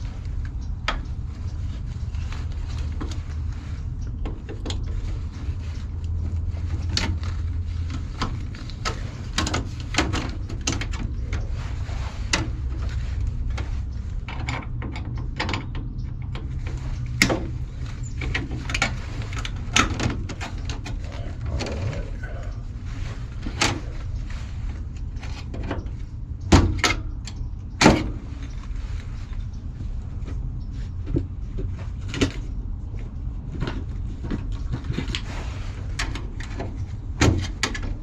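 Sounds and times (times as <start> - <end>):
steady low rumble: 0.0 - 38.0.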